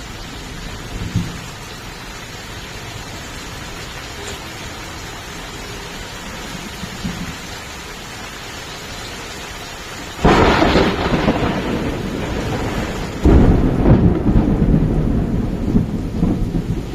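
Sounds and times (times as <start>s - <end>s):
steady rain falling: 0.0s - 16.9s
thunder clap rumbling: 10.2s - 16.9s.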